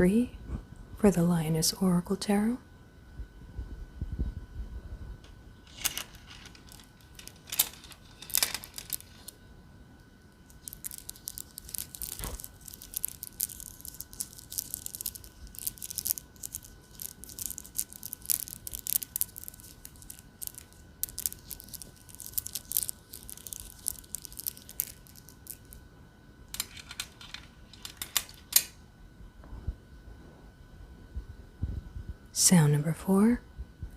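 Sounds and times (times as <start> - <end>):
crisp crackling and clicking: 5.7 - 9.4, 10.3 - 25.8, 26.5 - 28.8.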